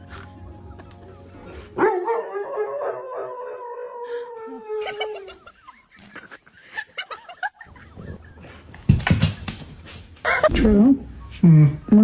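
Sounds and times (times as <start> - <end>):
dog howling: 1.8 - 5.4
laughter-like vocal sounds: 4.1 - 8.8, 10.2 - 12.0.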